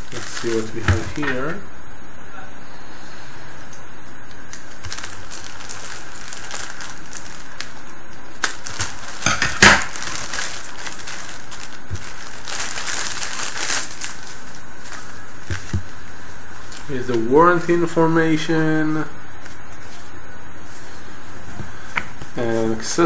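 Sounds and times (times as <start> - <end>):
packaging crinkling and rustling: 0.0 - 1.5, 4.3 - 18.0.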